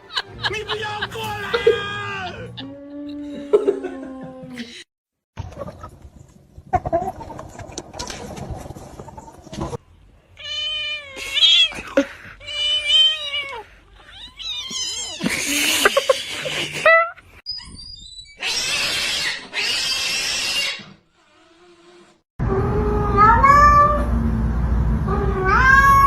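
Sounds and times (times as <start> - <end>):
cat yowling: 25.3 - 26.0.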